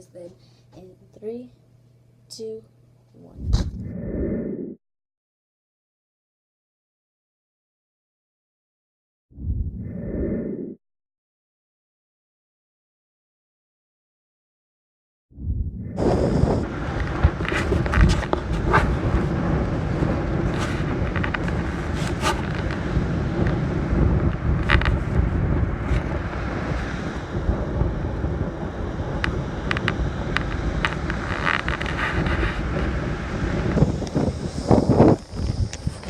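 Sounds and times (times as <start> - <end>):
wind buffeting microphone: 3.4 - 4.0, 15.4 - 36.0.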